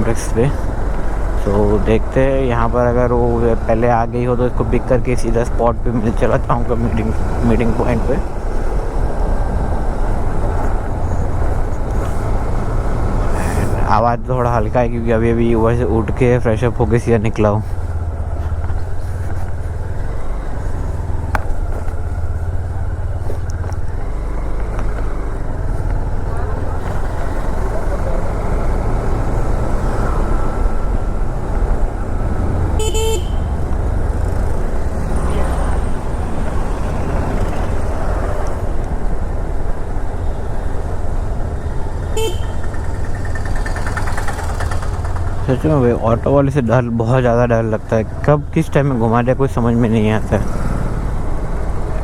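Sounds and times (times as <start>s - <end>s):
road and wind noise: 0.0s - 52.0s
motorcycle engine running: 17.6s - 46.9s.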